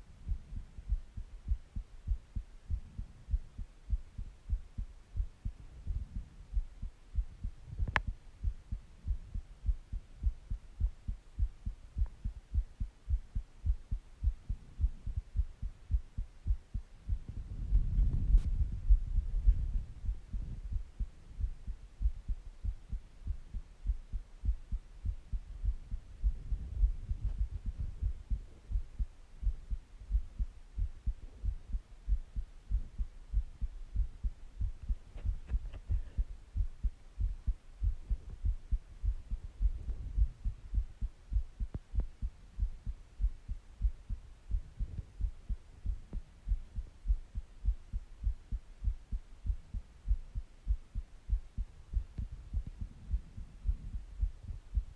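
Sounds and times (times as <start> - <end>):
heartbeat thumps: 0.0 - 54.9
soft breathing: 34.9 - 36.8.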